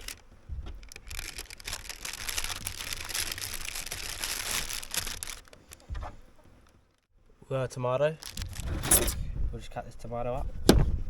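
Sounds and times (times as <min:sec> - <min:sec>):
baking paper crinkling: 0:00.0 - 0:05.9, 0:08.2 - 0:08.8.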